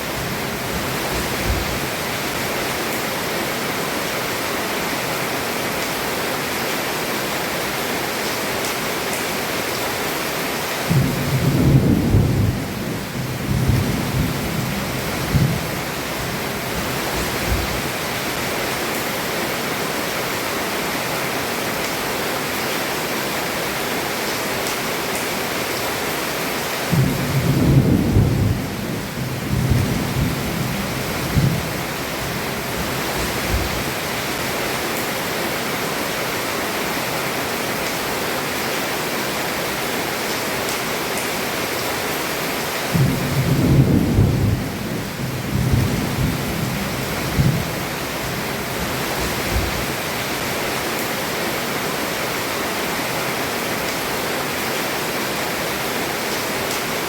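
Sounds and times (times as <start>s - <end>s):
heavy rain on a roof: 0.0s - 57.0s
thunder rumbling: 0.1s - 2.0s, 10.9s - 17.9s, 26.9s - 34.0s, 42.9s - 50.1s.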